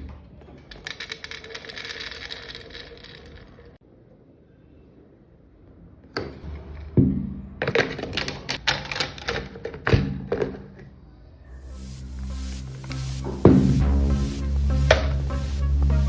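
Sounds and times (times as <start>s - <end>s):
low hum: 11.3s - 16.0s.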